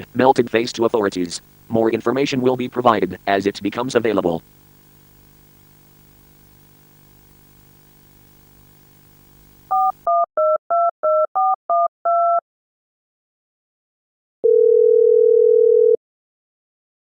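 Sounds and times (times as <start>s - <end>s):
telephone keypad beeps: 9.7s - 12.4s.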